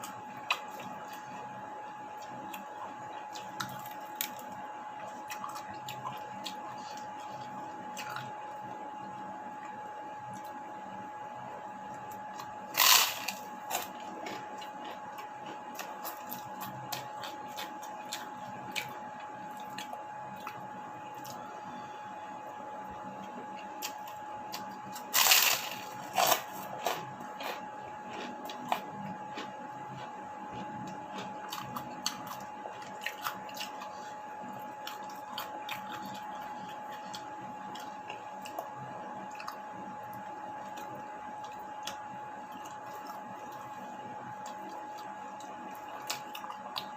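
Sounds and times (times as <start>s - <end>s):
chewing and crunching: 0.0s - 10.6s, 11.9s - 21.4s, 23.2s - 46.9s
high-pitched hum: 20.1s - 30.0s.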